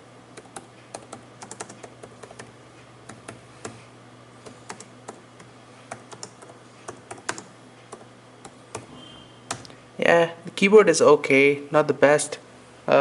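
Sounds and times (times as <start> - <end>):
laptop keyboard keys clicking: 0.4 - 2.5, 3.1 - 3.8, 4.4 - 5.2, 5.9 - 8.9, 9.5 - 9.7.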